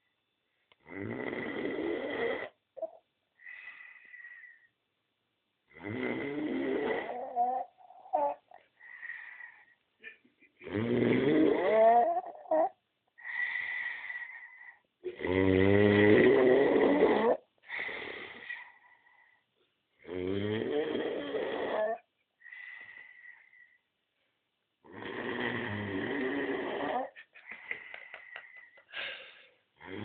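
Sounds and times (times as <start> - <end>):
loud snores: 0.8 - 4.6, 5.7 - 9.6, 10.6 - 18.8, 20.0 - 23.7, 24.9 - 27.2, 29.8 - 30.0
faintly whistling breaths: 22.4 - 24.0.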